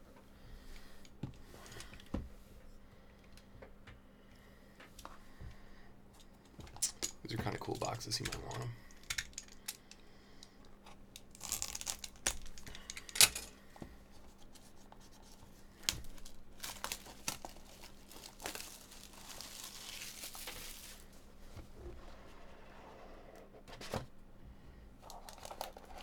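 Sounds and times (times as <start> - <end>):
packaging torn and crinkled: 11.2 - 13.0, 15.8 - 21.2, 25.1 - 26.0.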